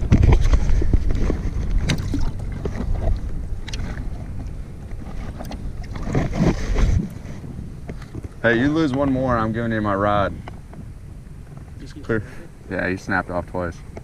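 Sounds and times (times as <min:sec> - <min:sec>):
wind buffeting microphone: 0:00.0 - 0:14.0
clicks and knocks on kayak: 0:07.8 - 0:09.3.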